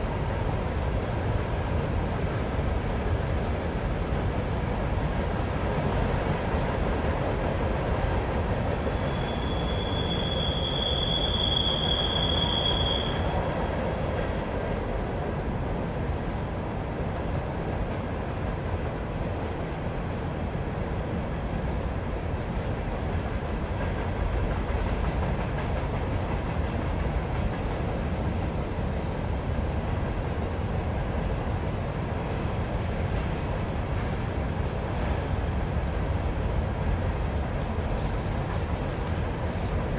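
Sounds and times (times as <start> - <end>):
train wheels rumbling on rail: 0.0 - 39.9
high steady squeal: 8.3 - 13.9.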